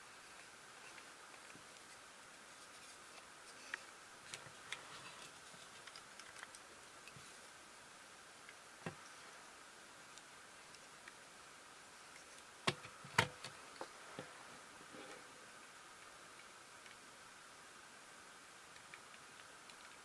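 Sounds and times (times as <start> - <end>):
low hiss: 0.0 - 20.0
small clicks and taps: 18.7 - 20.0.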